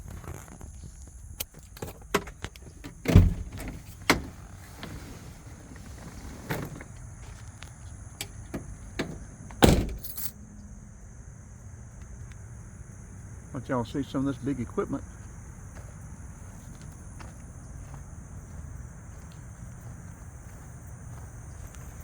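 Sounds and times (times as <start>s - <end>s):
heavy thumps: 2.9s - 4.3s, 8.2s - 10.2s.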